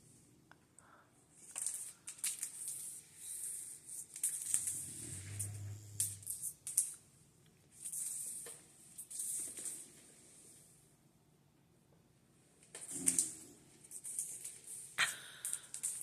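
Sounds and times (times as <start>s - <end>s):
brief low hum: 4.7s - 6.4s.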